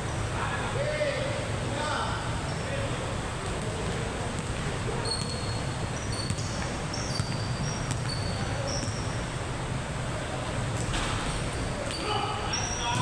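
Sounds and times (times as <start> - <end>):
sneaker squeaks on court: 4.4 - 9.3, 11.8 - 13.0.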